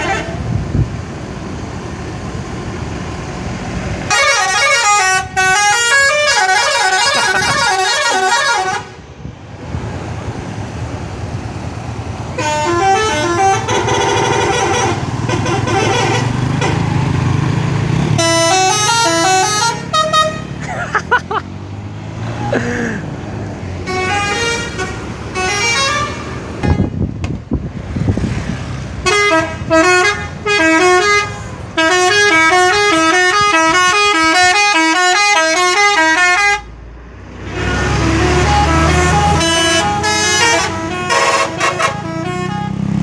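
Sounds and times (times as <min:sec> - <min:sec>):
bus engine running: 0:00.0 - 0:43.0
multi-tone musical horn melody: 0:04.1 - 0:09.0, 0:12.4 - 0:16.9, 0:18.0 - 0:20.6, 0:23.8 - 0:26.9, 0:29.0 - 0:36.7, 0:37.6 - 0:42.9.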